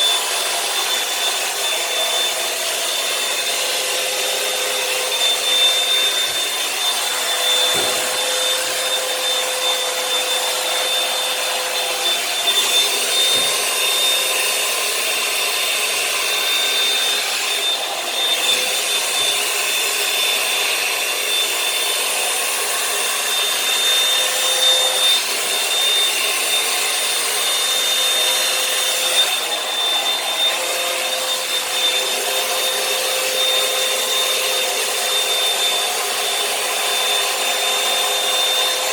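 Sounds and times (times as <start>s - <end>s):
hair dryer fan with whine: 0.0s - 38.9s.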